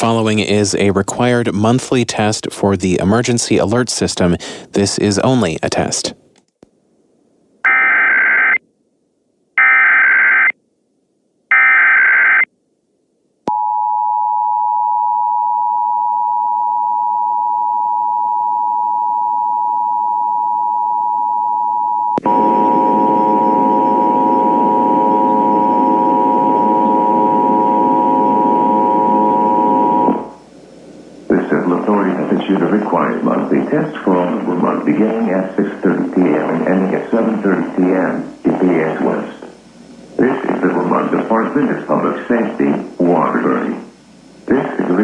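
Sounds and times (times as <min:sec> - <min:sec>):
digital data tone bursts: 0:07.7 - 0:08.6, 0:09.6 - 0:10.5, 0:11.5 - 0:12.5
harsh noisy layer: 0:31.3 - 0:39.5, 0:40.2 - 0:43.8.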